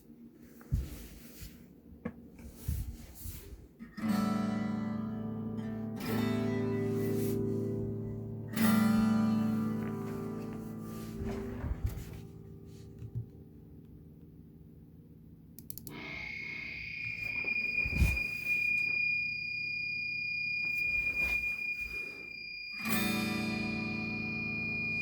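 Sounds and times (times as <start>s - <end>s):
high-pitched electronic whine: 15.8s - 25.0s
harsh electronic buzz: 15.9s - 25.0s.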